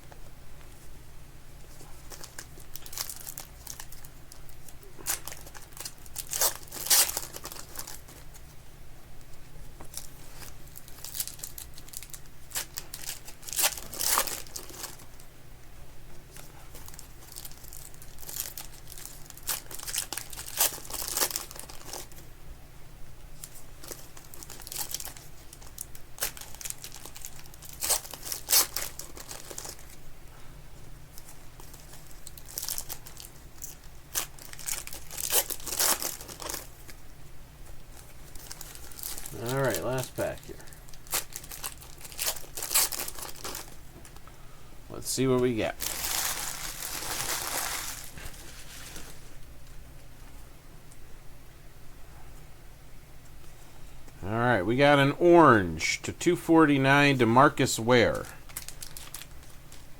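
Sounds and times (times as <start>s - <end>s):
card pack wrappers crinkling: 2.0s - 8.4s, 9.8s - 15.2s, 16.4s - 22.2s, 23.4s - 30.0s, 31.2s - 37.0s, 38.0s - 44.2s, 45.4s - 49.3s, 56.6s - 59.9s.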